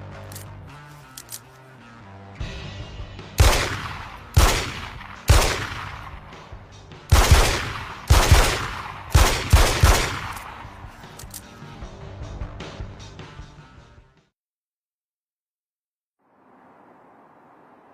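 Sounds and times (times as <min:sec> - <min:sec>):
pistol shots echoing: 0:03.4 - 0:06.5, 0:07.1 - 0:10.8.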